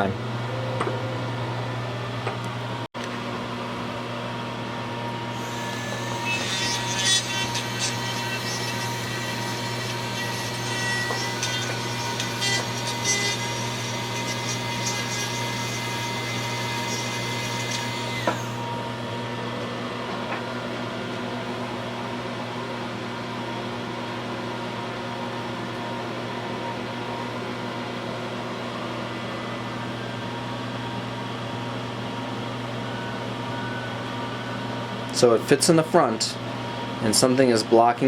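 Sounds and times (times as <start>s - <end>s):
steady low hum: 0.0s - 7.7s
rotary grinder whining: 5.3s - 18.7s.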